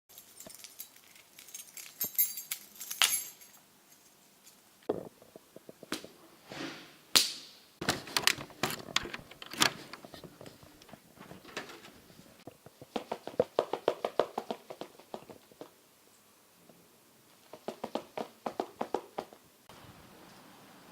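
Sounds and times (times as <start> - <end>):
high metallic jingle: 0.1 - 4.2
scattered clicks and knocks: 7.8 - 15.7.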